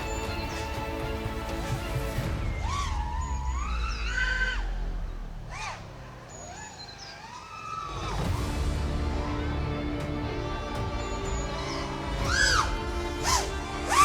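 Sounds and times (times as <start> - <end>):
quadcopter motors whining: 11.6 - 14.0.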